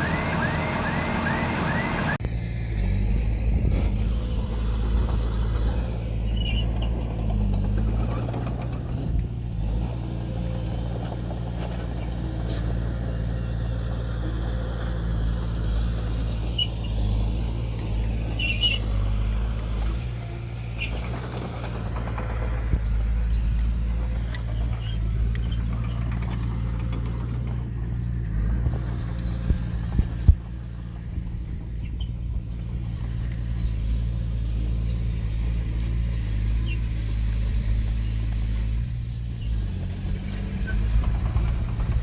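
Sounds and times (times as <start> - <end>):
diesel engine running: 0.0 - 42.0.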